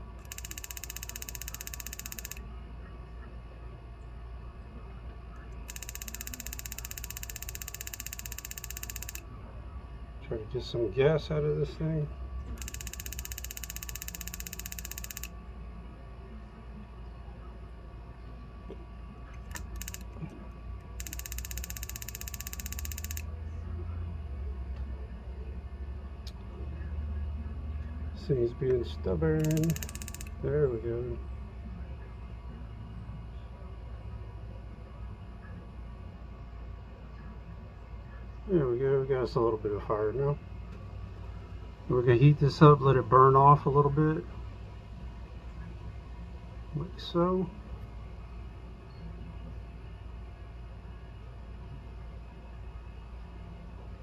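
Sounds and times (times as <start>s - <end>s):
fast mechanical clicking: 0.2s - 2.4s, 5.7s - 9.2s, 12.6s - 15.3s, 19.5s - 20.4s, 21.0s - 23.2s, 29.4s - 30.3s.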